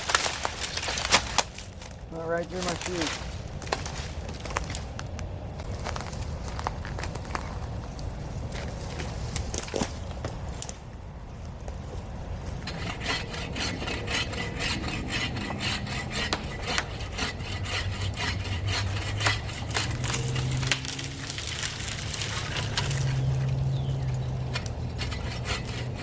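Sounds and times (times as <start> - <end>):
hand saw cutting branch: 2.4 - 3.9, 12.6 - 26.0.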